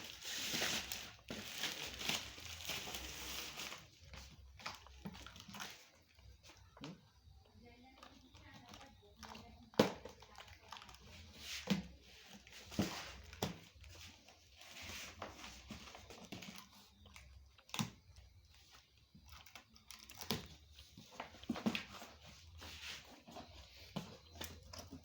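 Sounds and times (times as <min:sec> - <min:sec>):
cardboard and plastic rustling: 0:00.0 - 0:25.0.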